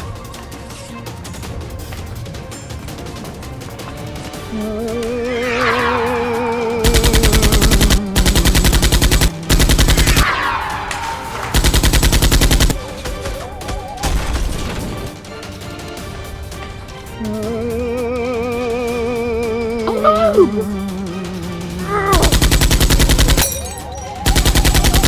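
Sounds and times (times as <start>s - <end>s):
background music with held tones: 0.0s - 25.0s
falling whistle-like glides: 4.5s - 8.1s, 9.3s - 12.8s, 23.8s - 25.0s
automatic gunfire bursts: 6.9s - 10.2s, 11.4s - 15.2s, 22.3s - 23.4s.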